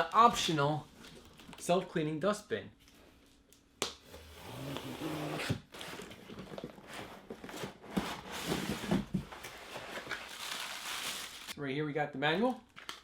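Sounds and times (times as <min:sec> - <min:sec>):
packaging rustling: 0:05.8 - 0:11.6.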